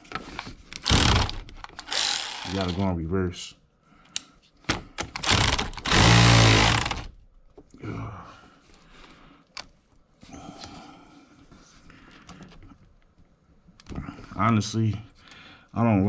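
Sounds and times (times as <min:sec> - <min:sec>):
power tool motor running: 0:00.8 - 0:02.8, 0:05.2 - 0:07.1.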